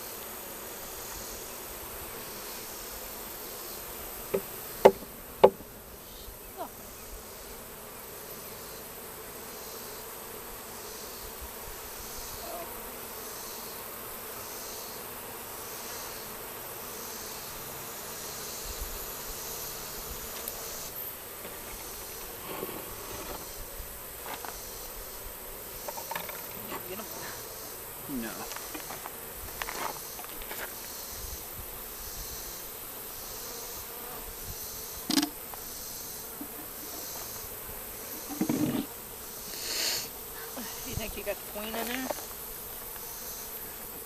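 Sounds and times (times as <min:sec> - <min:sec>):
bee swarm buzzing: 0:00.0 - 0:44.0
sharp knocks: 0:04.3 - 0:05.6.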